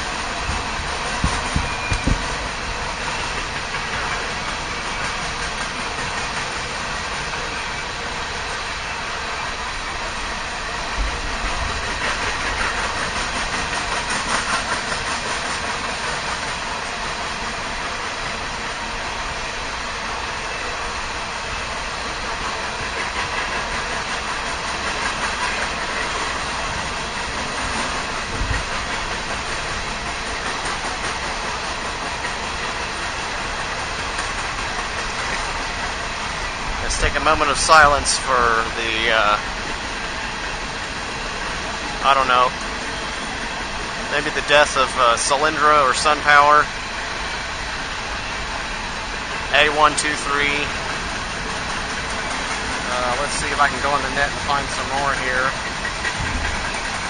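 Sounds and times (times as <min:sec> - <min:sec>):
heavy knocks from train cars: 0:00.0 - 0:08.1, 0:22.3 - 0:38.1, 0:50.7 - 0:57.0
train wheels rattling on rails: 0:00.0 - 0:57.0.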